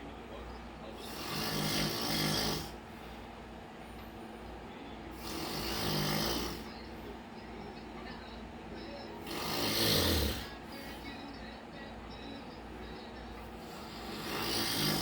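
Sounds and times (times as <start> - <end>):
man snoring loudly: 1.0 - 2.8, 5.2 - 6.7, 9.2 - 10.6, 13.6 - 15.0.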